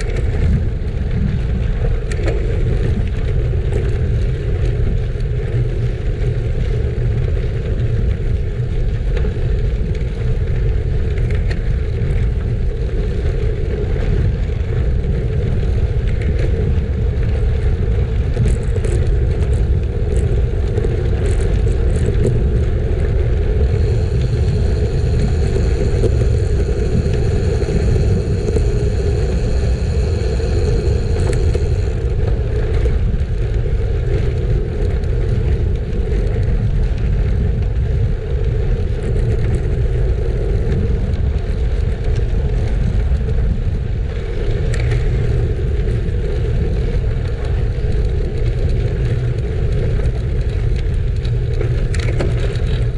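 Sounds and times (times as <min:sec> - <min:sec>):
bike tyres rolling over gravel: 0:00.0 - 0:52.9
wind noise on microphone: 0:00.0 - 0:52.9
thin high whine: 0:22.0 - 0:33.8.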